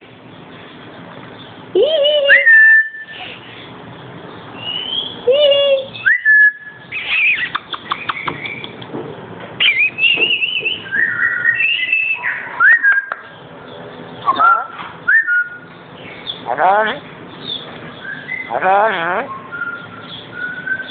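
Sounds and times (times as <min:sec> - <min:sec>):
parrot whistled calls with trills: 0:01.8 - 0:03.6, 0:04.6 - 0:08.8, 0:09.6 - 0:13.4, 0:14.2 - 0:16.5, 0:17.4 - 0:20.9
bird clicks: 0:07.4 - 0:09.0.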